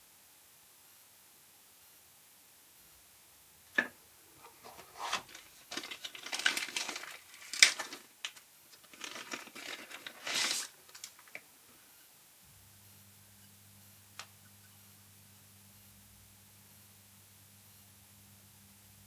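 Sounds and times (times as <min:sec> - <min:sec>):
packaging rustling and crinkling: 0:03.8 - 0:11.5.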